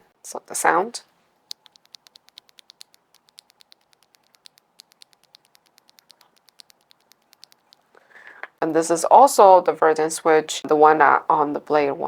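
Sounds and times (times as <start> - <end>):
keyboard key clacks: 1.5 - 7.8.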